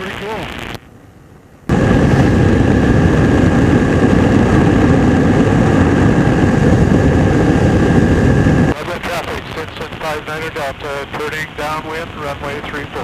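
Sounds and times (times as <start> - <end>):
ultralight engine and propeller drone: 0.0 - 13.0.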